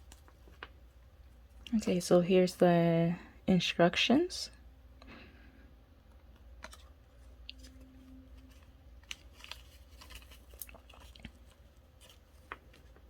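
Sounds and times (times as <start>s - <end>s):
paper rustling: 6.6s - 13.0s.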